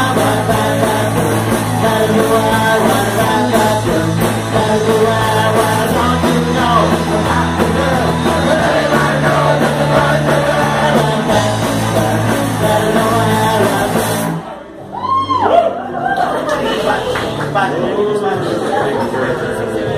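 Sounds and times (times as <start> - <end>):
punk rock band playing: 0.0 - 15.4.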